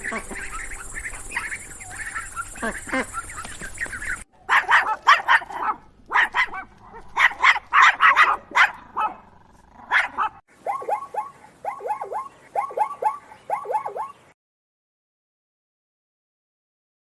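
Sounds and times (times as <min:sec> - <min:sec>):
dog barking: 0:04.4 - 0:14.2.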